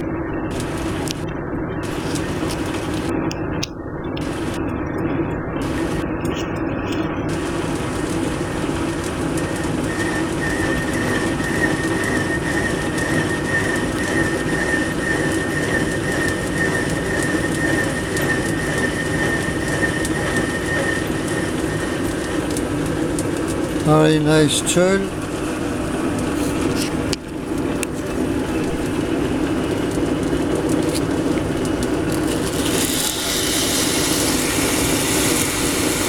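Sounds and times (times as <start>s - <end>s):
metal lathe running: 7.3s - 26.7s, 27.4s - 36.0s
high squeal from cutting tool: 9.9s - 22.5s, 32.4s - 36.0s.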